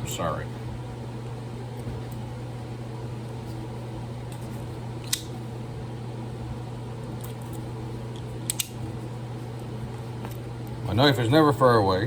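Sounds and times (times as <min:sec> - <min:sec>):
steady low hum: 0:00.0 - 0:12.0
sharp clicks: 0:08.5 - 0:08.8.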